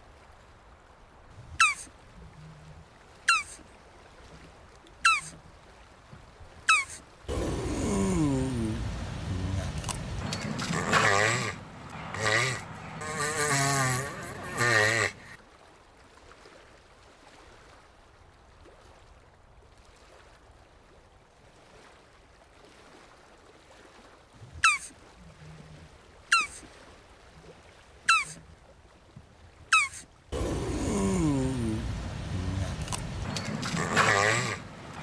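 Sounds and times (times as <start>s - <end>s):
tortoise calls: 1.4s - 3.6s, 5.0s - 5.4s, 6.7s - 15.4s, 24.6s - 24.9s, 26.3s - 26.6s, 28.1s - 28.4s, 29.7s - 35.0s.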